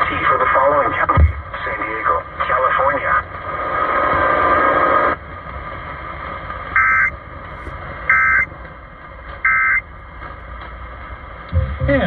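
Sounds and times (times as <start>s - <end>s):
radio hiss: 0.0s - 5.2s.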